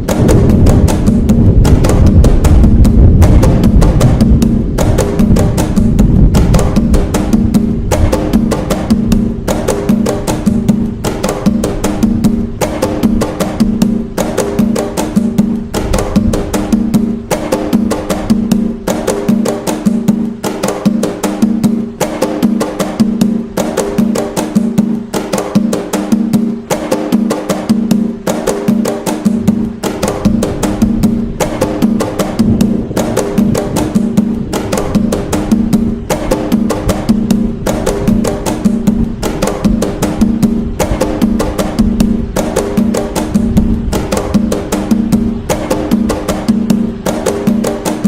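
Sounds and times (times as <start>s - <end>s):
hand drums playing fast rhythm: 0.0s - 48.0s.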